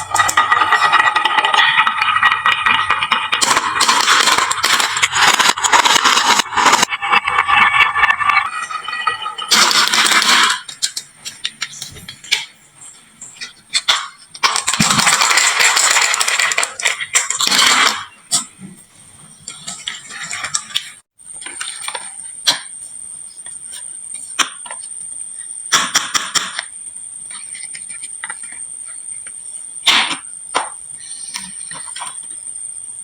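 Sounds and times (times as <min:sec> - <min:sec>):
clatter of marbles tumbling: 0:00.0 - 0:12.5, 0:13.8 - 0:18.5
glass marbles rolling and clicking: 0:00.0 - 0:12.5, 0:13.4 - 0:18.5.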